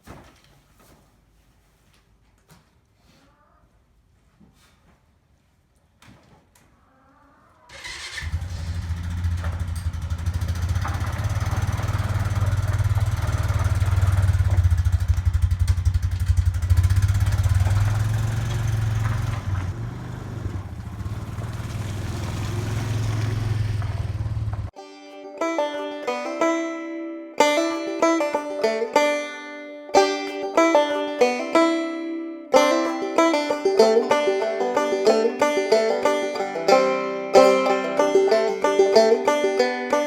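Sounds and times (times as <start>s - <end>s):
engine starting and running: 7.7s - 24.7s.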